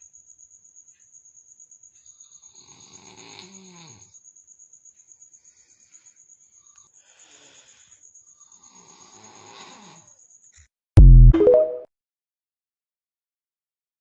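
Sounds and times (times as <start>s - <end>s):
person snoring: 2.7s - 4.1s
faint breath: 5.2s - 10.2s.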